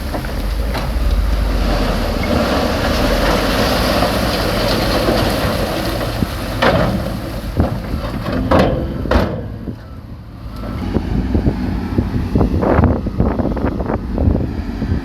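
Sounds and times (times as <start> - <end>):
diesel engine running: 0.0 - 15.0
sharp metal clanks and knocks: 6.6 - 9.7.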